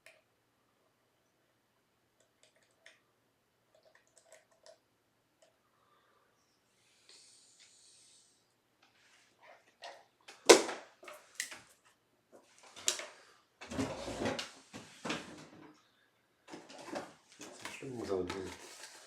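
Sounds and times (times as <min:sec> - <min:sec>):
rustling and clatter: 0:16.5 - 0:19.0.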